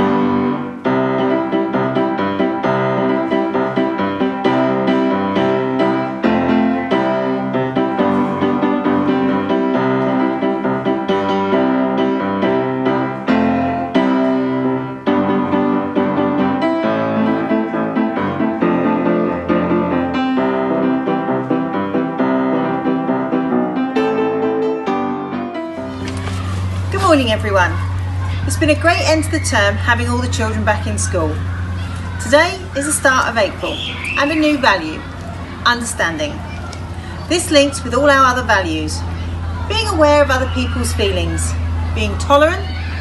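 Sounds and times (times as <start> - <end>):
piano music: 0.0 - 32.8.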